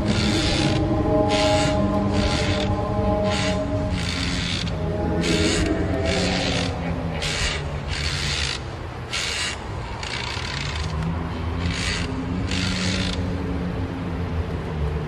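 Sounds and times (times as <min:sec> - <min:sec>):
low droning hum: 0:00.0 - 0:09.1.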